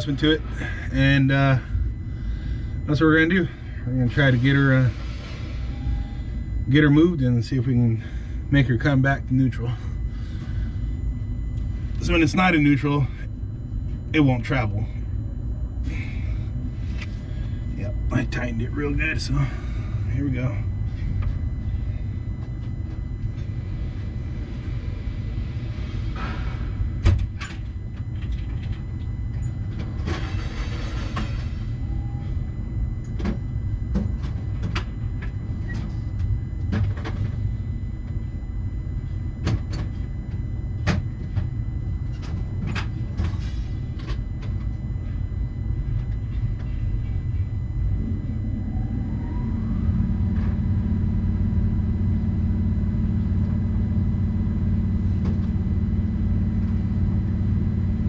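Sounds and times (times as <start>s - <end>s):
rising tone into steady hum: 0.0s - 58.0s
skid steer engine running: 48.0s - 58.0s.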